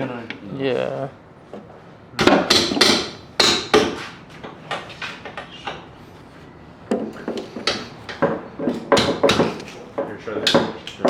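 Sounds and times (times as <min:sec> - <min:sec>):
hand tools knocking on metal: 0:06.9 - 0:11.0.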